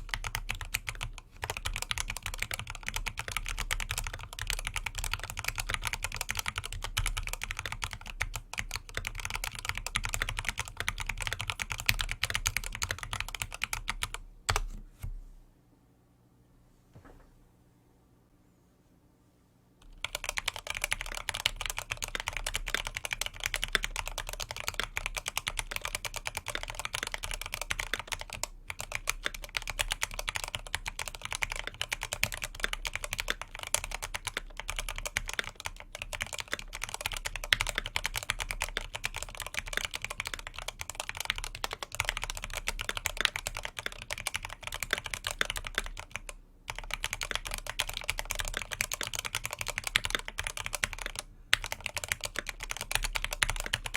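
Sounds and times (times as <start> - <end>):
fast mechanical keyboard typing: 0.0 - 14.2, 19.8 - 53.9.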